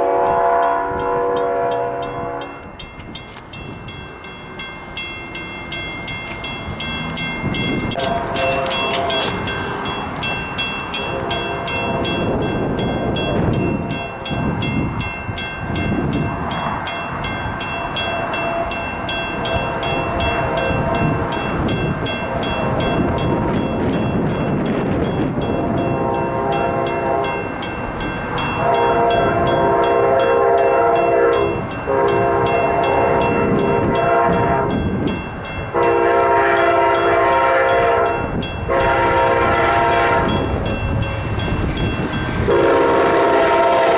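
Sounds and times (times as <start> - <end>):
train horn blasts: 0.0 - 2.8, 7.9 - 9.9, 11.0 - 12.4, 18.4 - 23.4, 25.6 - 27.5, 28.5 - 35.0, 35.7 - 40.6, 42.4 - 43.9
train rumble: 0.0 - 43.9.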